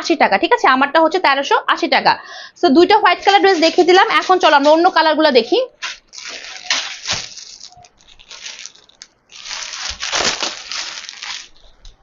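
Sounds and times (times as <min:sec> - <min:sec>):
fabric and wrapping rustling: 0:03.0 - 0:12.0.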